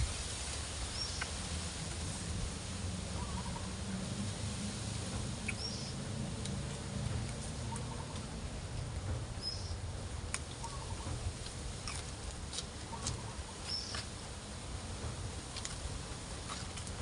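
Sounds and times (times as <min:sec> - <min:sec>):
wind buffeting microphone: 0:00.0 - 0:17.0
light ticks: 0:06.4 - 0:09.2.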